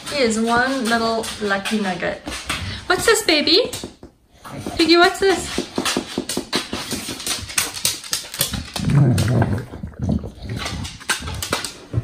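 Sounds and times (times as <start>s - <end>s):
dog grunting: 8.4s - 11.7s.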